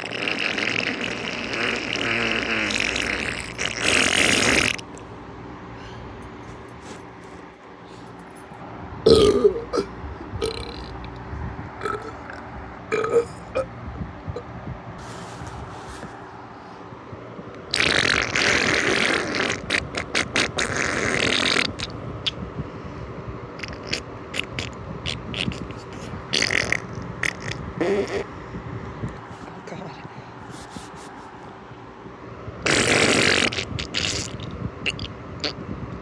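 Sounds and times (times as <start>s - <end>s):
person burping: 9.1s - 10.9s, 11.8s - 13.7s.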